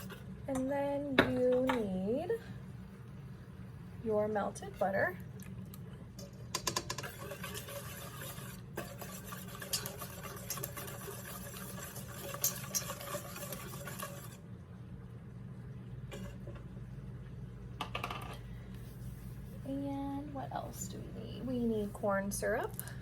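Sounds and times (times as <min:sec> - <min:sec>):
whisk clicking in a bowl: 0:06.5 - 0:14.4.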